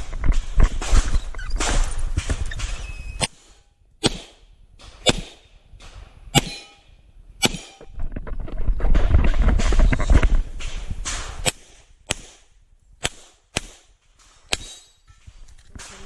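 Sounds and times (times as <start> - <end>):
pistol shots with echo: 4.0 - 4.4, 5.0 - 5.5, 6.4 - 6.8, 7.4 - 7.8, 11.4 - 14.9.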